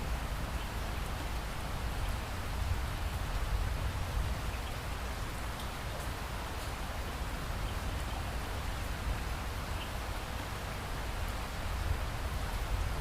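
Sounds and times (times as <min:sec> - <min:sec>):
faint raindrop ticks: 0:04.3 - 0:10.3.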